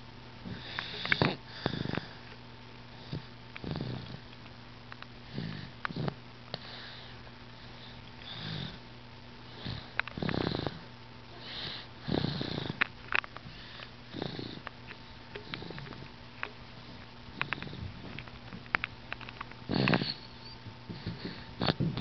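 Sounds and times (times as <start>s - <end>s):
child snoring softly: 0.4s - 2.3s, 3.0s - 4.3s, 5.3s - 8.8s, 9.5s - 12.8s, 13.5s - 16.0s, 19.7s - 22.0s.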